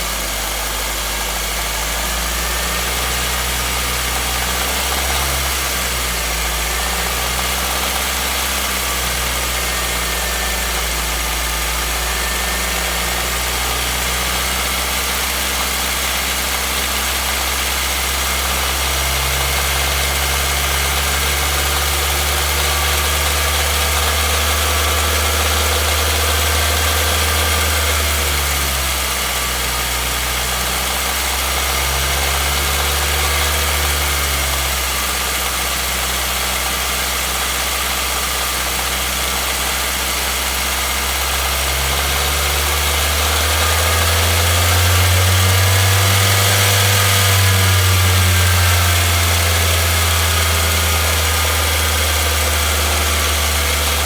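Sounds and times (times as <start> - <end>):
car engine running: 0.0 - 54.0.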